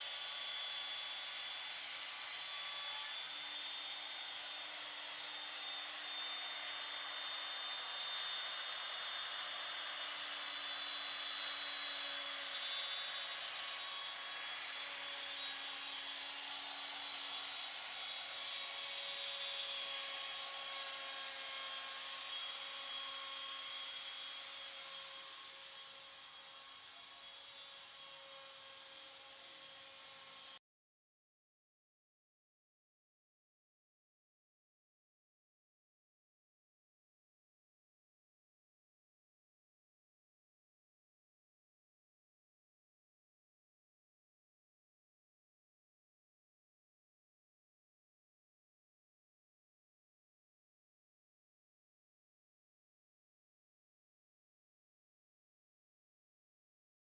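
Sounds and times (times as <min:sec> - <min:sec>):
router motor cutting wood: 0:00.0 - 0:30.6.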